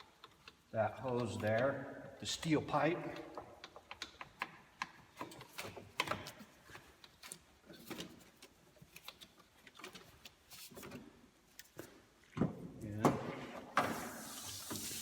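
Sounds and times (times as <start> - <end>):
hand tools clicking and tapping: 0.0 - 10.4.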